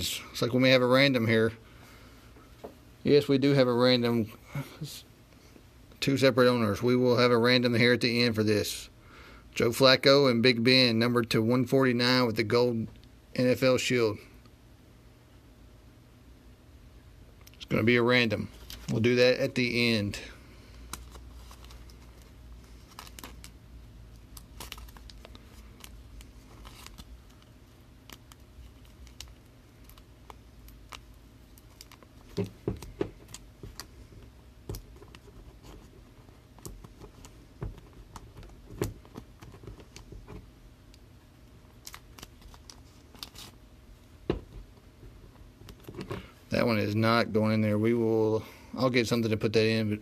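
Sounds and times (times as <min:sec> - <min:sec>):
trading cards clicking and rustling: 0:24.2 - 0:40.5.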